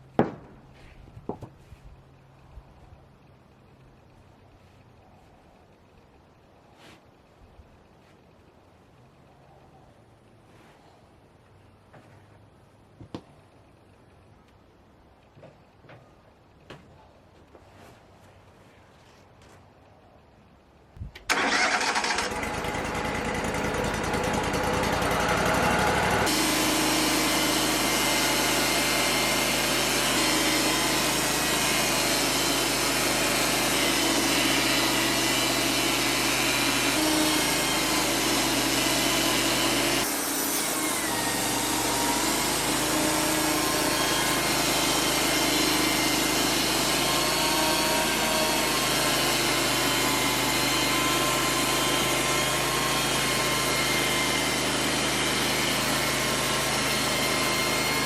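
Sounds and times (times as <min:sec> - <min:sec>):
bandsaw mill running: 0:21.3 - 0:58.0.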